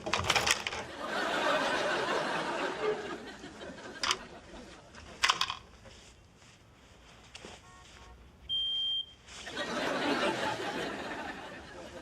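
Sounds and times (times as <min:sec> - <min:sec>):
audience laughter: 0:00.9 - 0:05.0, 0:09.4 - 0:12.0
smoke detector beep: 0:08.5 - 0:09.2.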